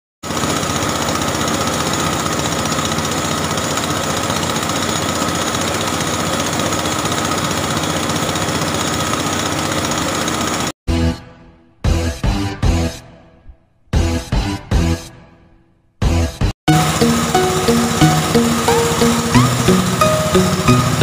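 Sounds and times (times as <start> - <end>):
rice mill mechanical clatter: 0.2 - 10.7, 16.7 - 21.0
machine whine: 16.7 - 21.0.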